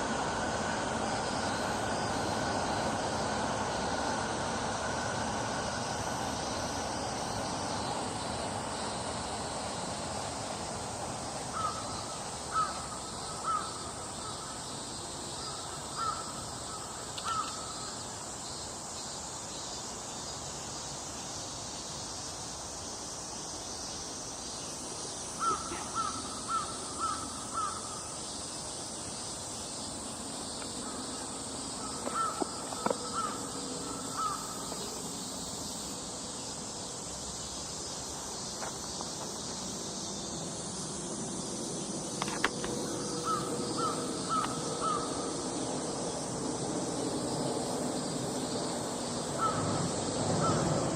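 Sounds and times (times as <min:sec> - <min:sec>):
steady outdoor hiss: 0:00.0 - 0:50.9
crow cawing: 0:11.5 - 0:11.9, 0:12.5 - 0:12.8, 0:13.4 - 0:14.4, 0:16.0 - 0:16.4, 0:25.4 - 0:28.0, 0:31.8 - 0:34.6, 0:43.2 - 0:45.2, 0:49.4 - 0:50.6.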